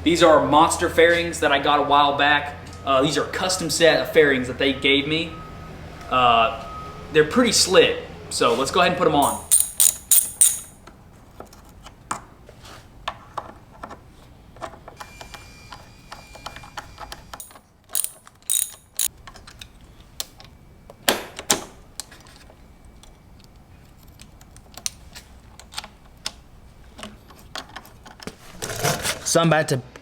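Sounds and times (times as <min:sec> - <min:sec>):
hand tools clicking and clanking: 0:09.2 - 0:10.8, 0:17.4 - 0:19.1.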